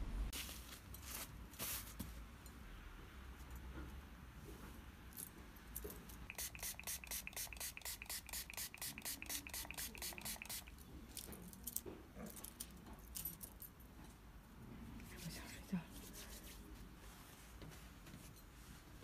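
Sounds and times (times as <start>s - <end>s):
rubbing strokes close to ear: 6.3s - 10.7s, 15.0s - 17.9s.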